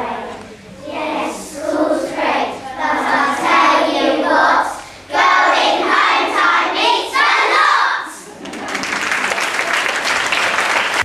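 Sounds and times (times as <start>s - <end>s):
young children singing: 0.0s - 8.3s.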